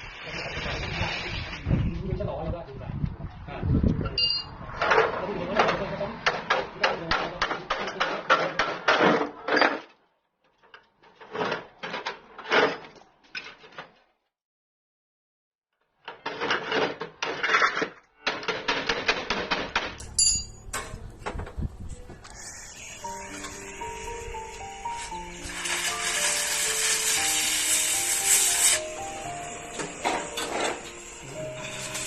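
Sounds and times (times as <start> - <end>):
hammer striking steel: 19.7 - 21.0, 29.2 - 32.0
music: 19.9 - 32.0.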